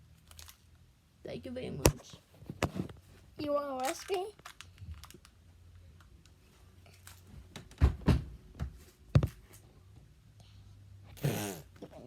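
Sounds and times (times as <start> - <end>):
dull thumps: 7.6 - 9.4.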